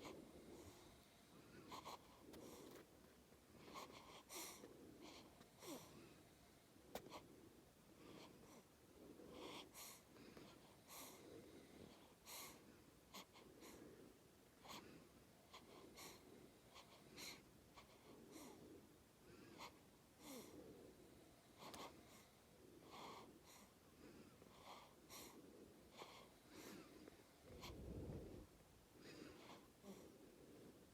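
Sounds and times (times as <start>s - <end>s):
faint wheezy snoring: 13.2s - 30.9s.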